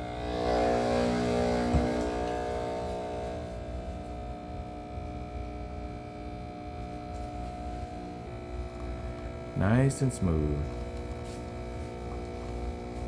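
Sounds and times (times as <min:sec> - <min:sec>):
espresso machine pump humming: 0:00.0 - 0:13.0.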